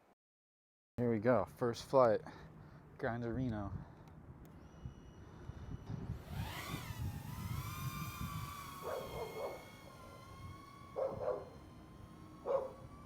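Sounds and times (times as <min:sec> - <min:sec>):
drone motors whining: 0:04.4 - 0:13.0
dog barking: 0:08.9 - 0:09.6, 0:11.0 - 0:11.4, 0:12.4 - 0:12.8.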